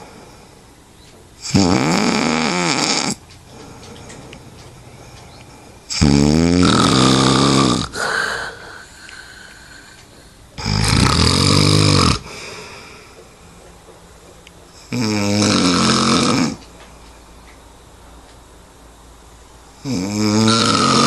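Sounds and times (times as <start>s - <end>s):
person snoring loudly: 1.4s - 3.2s, 5.9s - 9.9s, 10.6s - 12.9s, 14.9s - 16.6s, 19.8s - 21.0s.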